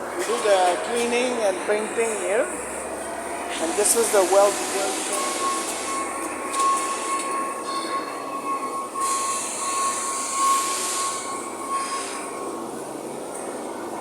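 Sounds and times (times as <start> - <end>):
machinery high whine: 0.0 - 14.0
machinery hiss: 0.1 - 7.7.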